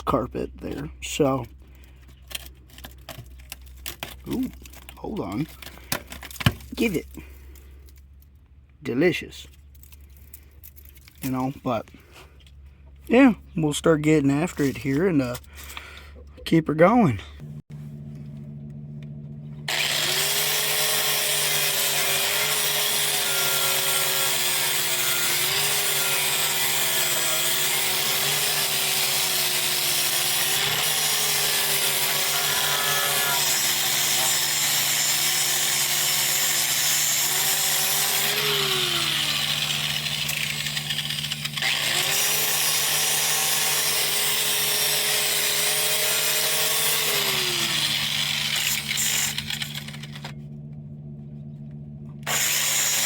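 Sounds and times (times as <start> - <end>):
angle grinder grinding steel: 19.6 - 50.5, 52.2 - 53.0.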